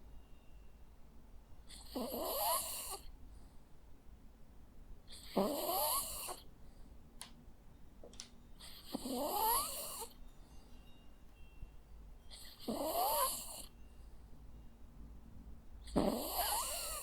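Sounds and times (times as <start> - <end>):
dog snoring: 1.7 - 3.1, 5.1 - 6.5, 8.6 - 10.2, 12.3 - 13.8, 15.8 - 17.0
faint clicks: 8.0 - 8.4.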